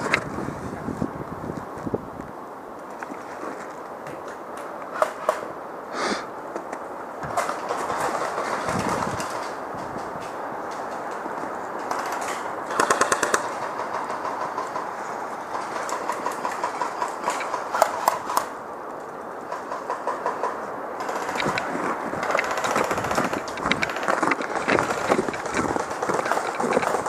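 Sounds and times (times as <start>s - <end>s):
airsoft rifles firing bursts: 11.9s - 14.9s, 19.5s - 27.0s.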